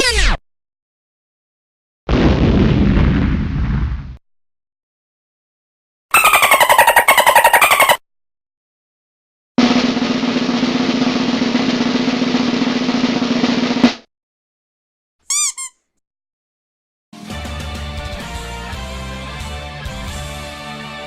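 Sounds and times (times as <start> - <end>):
snare drum roll: 9.6 - 14.1
short pitched chirp: 15.3 - 15.8.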